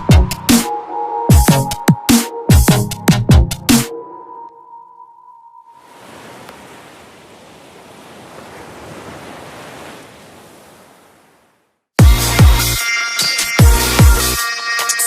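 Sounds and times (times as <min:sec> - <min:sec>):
electronic dance music: 0:12.0 - 0:15.0.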